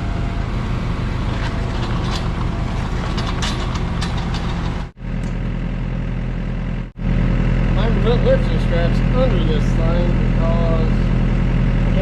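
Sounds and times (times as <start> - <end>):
excavator diesel engine running: 0.0 - 12.0
short clinks and scrapes: 1.2 - 4.9.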